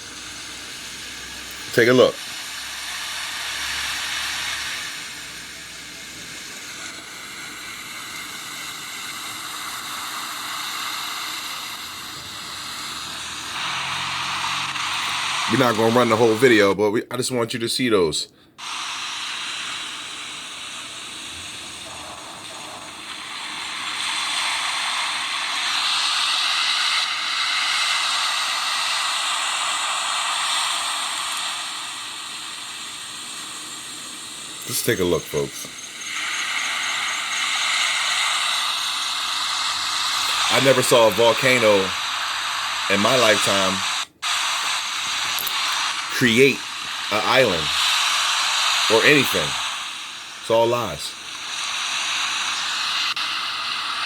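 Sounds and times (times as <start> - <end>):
steady hiss: 0.0 - 54.0
faint high steady tones: 33.4 - 54.0.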